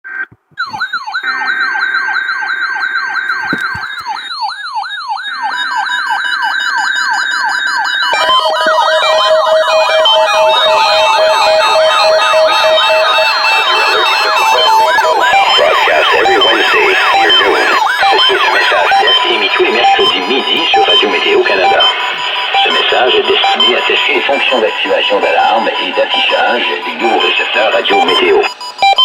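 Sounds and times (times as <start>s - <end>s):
electronic siren sweeps: 0.6s - 29.0s
steady beeping tone: 8.5s - 29.0s.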